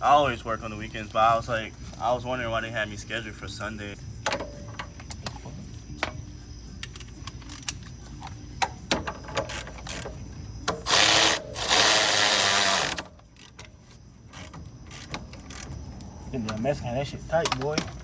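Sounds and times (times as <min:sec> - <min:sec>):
ratchet clicks: 0:06.8 - 0:07.9, 0:08.6 - 0:13.7, 0:14.3 - 0:16.0
impact wrench running: 0:10.7 - 0:13.1.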